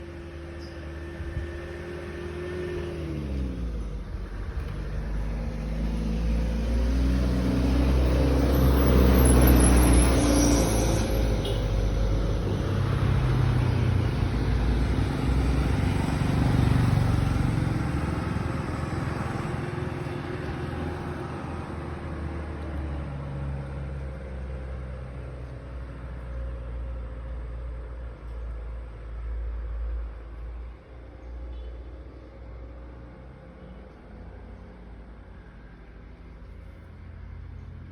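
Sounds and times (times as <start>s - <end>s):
vehicle engine running: 11.3s - 31.7s.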